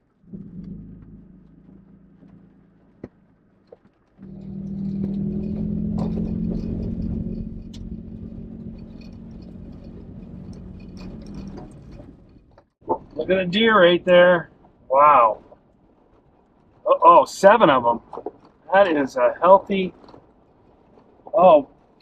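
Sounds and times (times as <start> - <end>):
pickup engine rumble: 0.0 - 22.0
light rattling clatter: 0.3 - 13.5, 19.4 - 22.0.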